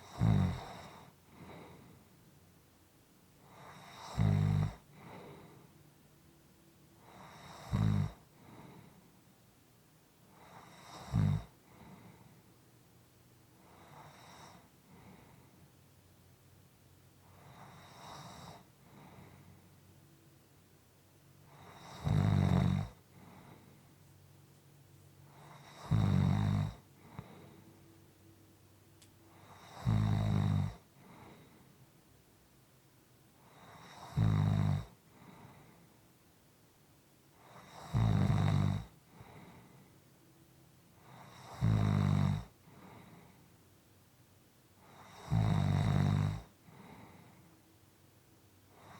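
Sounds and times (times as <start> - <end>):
person snoring: 0.0 - 1.9, 3.5 - 5.6, 7.0 - 8.6, 10.4 - 12.2, 21.5 - 23.6, 25.3 - 27.6, 29.3 - 31.5, 33.5 - 35.5, 37.4 - 39.6, 41.0 - 43.2, 44.9 - 47.2
soft breathing: 0.6 - 2.4, 4.8 - 6.0, 7.0 - 9.5, 11.5 - 12.8, 13.6 - 15.8, 17.2 - 20.5, 22.8 - 25.9, 26.6 - 29.8, 30.7 - 32.0, 35.0 - 36.2, 39.0 - 40.2, 42.5 - 43.7, 46.5 - 47.8.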